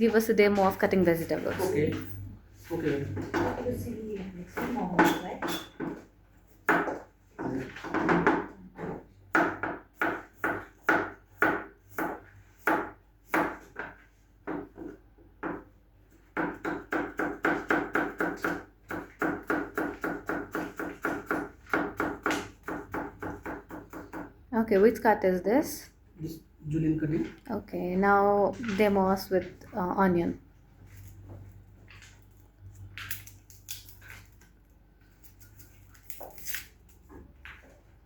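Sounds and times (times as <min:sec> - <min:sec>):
knife chopping on wooden board: 0:06.6 - 0:15.7, 0:16.3 - 0:24.4.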